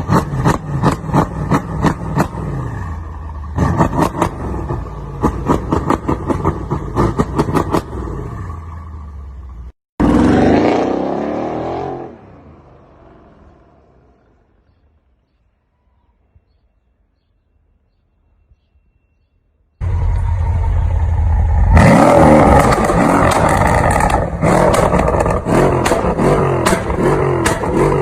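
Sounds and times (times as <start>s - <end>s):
car exhaust revving: 0.0s - 12.0s, 19.8s - 28.0s.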